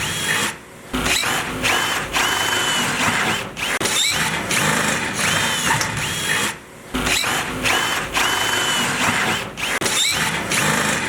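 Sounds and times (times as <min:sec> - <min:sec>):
electric drill boring into steel: 0:01.1 - 0:06.5.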